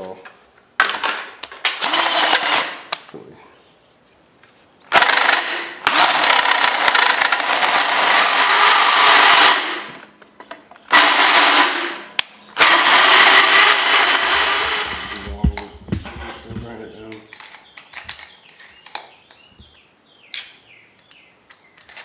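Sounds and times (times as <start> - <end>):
power drill cutting metal tube: 1.8 - 2.8, 5.0 - 10.0, 10.9 - 12.0, 12.6 - 15.2.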